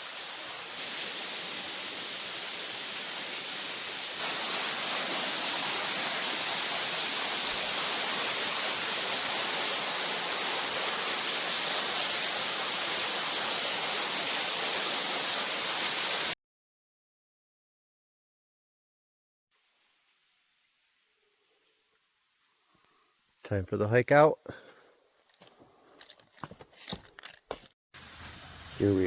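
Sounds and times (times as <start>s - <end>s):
waterfall rushing: 0.0s - 16.4s.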